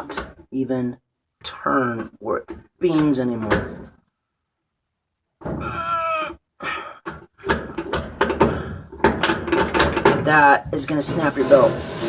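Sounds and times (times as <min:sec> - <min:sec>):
pulley clunks and scrapes: 0:00.0 - 0:00.5, 0:07.0 - 0:12.0.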